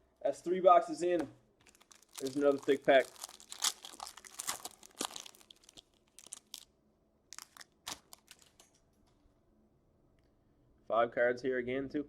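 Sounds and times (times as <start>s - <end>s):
wrapper crinkling and tearing: 1.6s - 6.7s, 7.3s - 8.8s.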